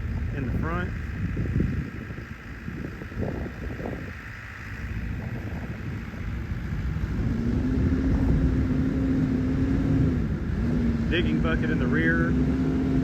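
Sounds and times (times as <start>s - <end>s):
backhoe diesel engine rumbling: 0.0s - 12.3s.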